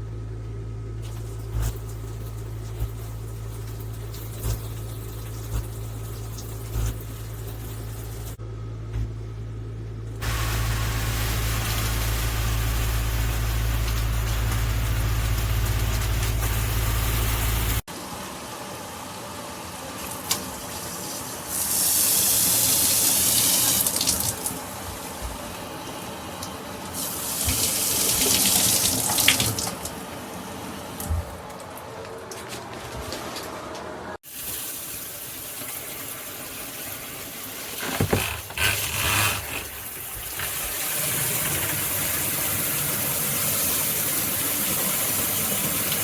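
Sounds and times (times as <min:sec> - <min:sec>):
shower water running: 0:01.0 - 0:08.4, 0:10.2 - 0:33.5, 0:34.2 - 0:46.0
loud hissing spray: 0:10.2 - 0:17.8.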